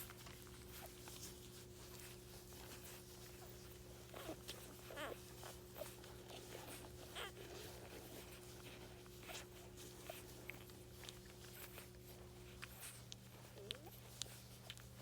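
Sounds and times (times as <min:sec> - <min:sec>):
puppies squeaking: 0:00.0 - 0:15.0
puppies suckling clicks: 0:00.0 - 0:15.0
steady low hum: 0:00.0 - 0:15.0.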